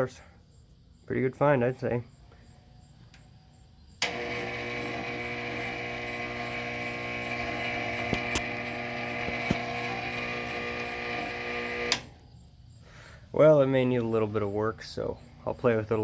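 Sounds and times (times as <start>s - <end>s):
fan motor humming: 4.0s - 12.2s.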